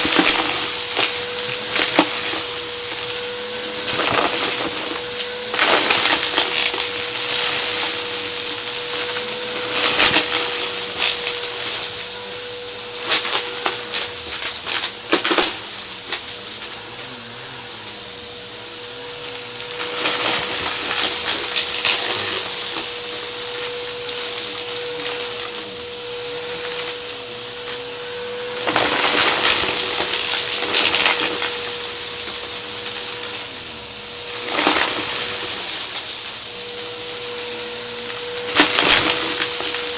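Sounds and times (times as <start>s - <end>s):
debris crackling up nozzle: 0.0s - 39.9s
vacuum cleaner motor whine: 0.0s - 39.9s.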